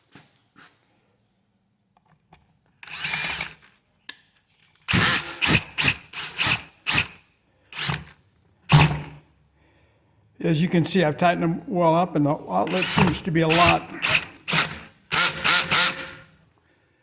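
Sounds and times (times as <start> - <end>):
power drill driving screws into metal: 2.8 - 3.7, 4.9 - 7.2, 7.8 - 9.2, 12.7 - 16.3.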